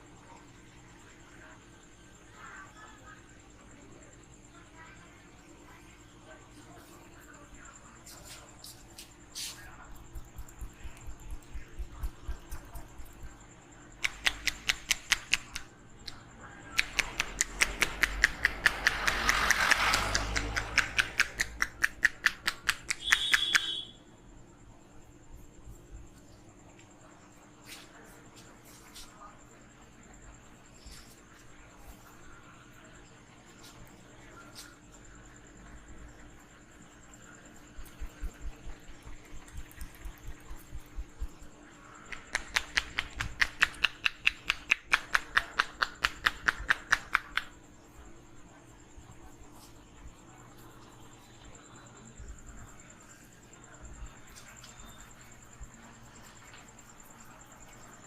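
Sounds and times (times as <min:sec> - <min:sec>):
rhythmic hand slaps on head: 0:14.0 - 0:15.7, 0:16.8 - 0:23.7, 0:42.1 - 0:47.5
hiss: 0:17.6 - 0:21.5.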